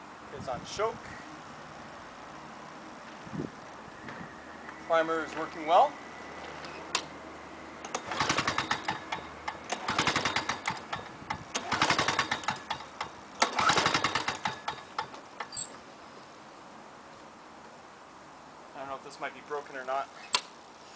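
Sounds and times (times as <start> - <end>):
lawn mower engine being pull-started: 6.4 - 7.2, 7.8 - 15.8.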